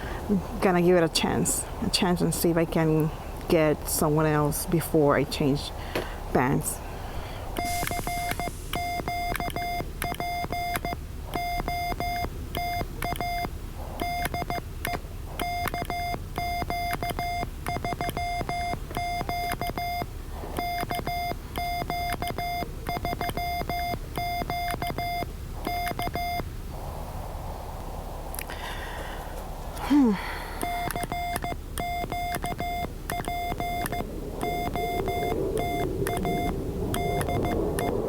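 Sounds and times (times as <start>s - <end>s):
morse code beeps: 7.6s - 26.5s, 30.6s - 38.0s.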